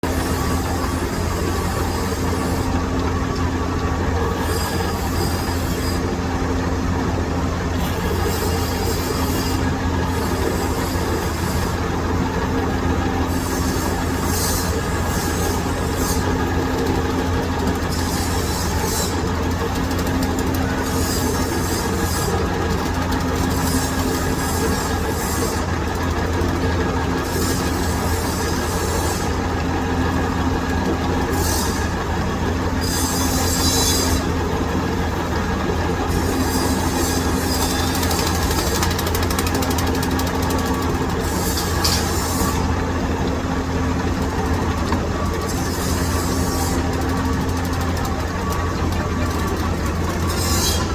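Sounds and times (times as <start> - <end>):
lathe cutting noise: 0.0 - 50.9
metal lathe humming: 0.0 - 50.9.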